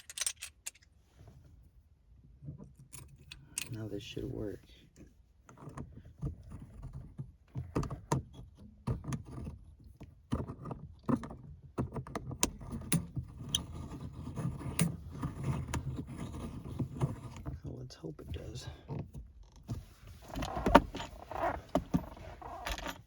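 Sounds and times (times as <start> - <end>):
plastic clicks and rattles: 0.0 - 0.9.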